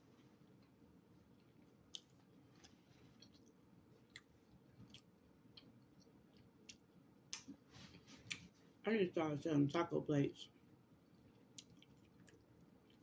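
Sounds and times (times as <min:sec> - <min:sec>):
chewing with wet mouth clicks: 0:00.6 - 0:07.6, 0:10.6 - 0:13.0.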